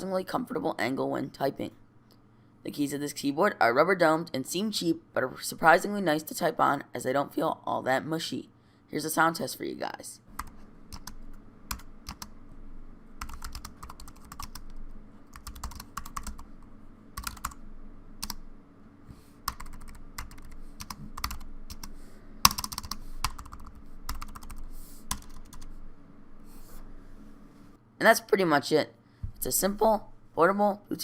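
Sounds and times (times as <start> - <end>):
keyboard typing: 10.3 - 12.4, 13.2 - 17.6, 18.2 - 18.4, 19.4 - 25.8.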